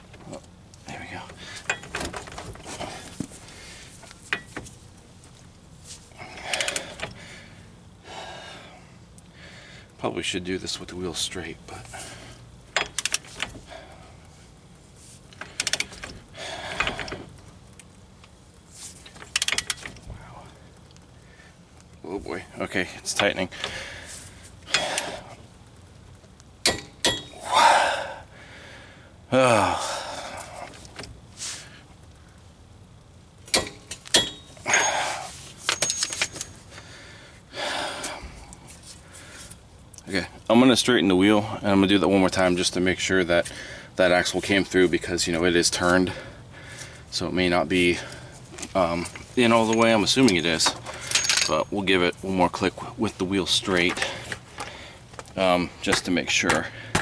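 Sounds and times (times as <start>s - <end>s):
heavy breathing: 6.1s - 9.9s, 16.3s - 17.3s, 23.5s - 25.4s, 27.4s - 30.8s, 36.7s - 39.6s, 43.5s - 44.0s, 45.8s - 47.2s, 47.8s - 50.0s, 54.0s - 55.1s
ratchet wrench clicking: 6.4s - 7.2s, 12.7s - 13.4s, 15.4s - 16.0s, 19.2s - 19.9s
torque wrench clicks: 12.8s - 13.2s, 19.3s - 19.8s.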